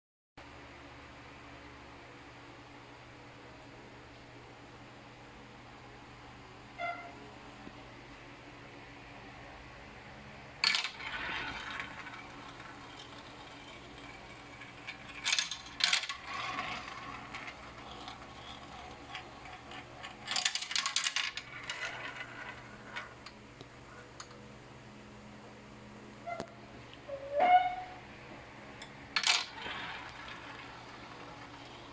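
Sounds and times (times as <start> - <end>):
marbles rolling and clacking: 10.6 - 23.4, 28.8 - 31.9.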